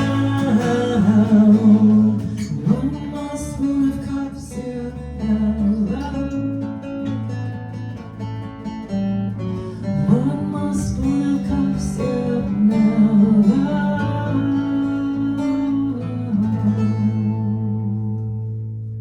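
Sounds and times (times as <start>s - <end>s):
wordless singing: 0.0s - 6.3s, 10.0s - 17.0s
guitar strumming chords: 0.0s - 18.9s.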